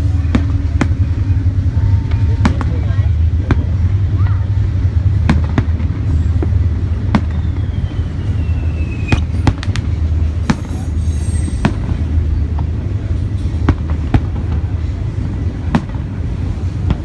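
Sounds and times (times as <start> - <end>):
low rumble: 0.0 - 17.0
fireworks bangs: 5.2 - 12.8, 13.6 - 17.0
falling firework whistle: 7.1 - 9.8.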